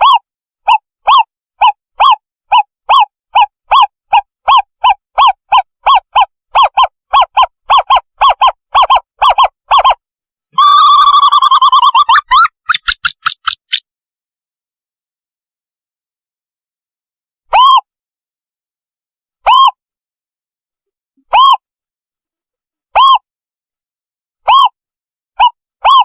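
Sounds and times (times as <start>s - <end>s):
owl hooting: 0.0s - 10.0s.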